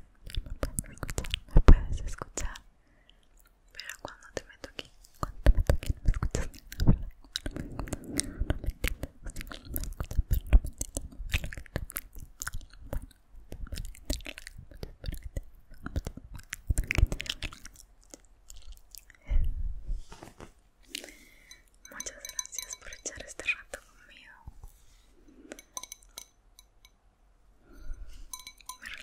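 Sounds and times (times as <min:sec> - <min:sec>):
wet mouth clicks and smacks: 0:00.2 - 0:19.2.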